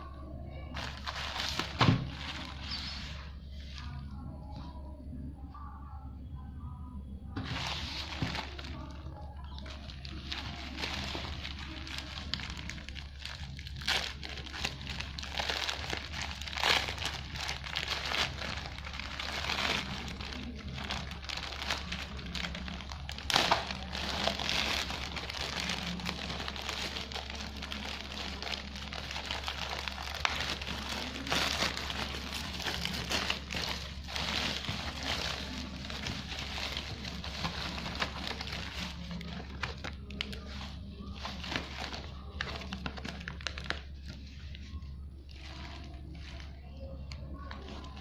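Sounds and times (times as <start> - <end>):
packaging crinkling and rustling: 0.7 - 4.0, 7.4 - 48.0.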